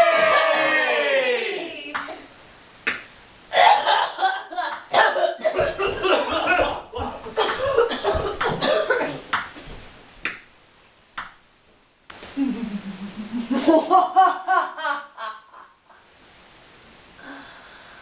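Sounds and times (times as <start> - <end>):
person coughing: 3.5 - 4.2, 4.9 - 6.7, 7.4 - 9.3.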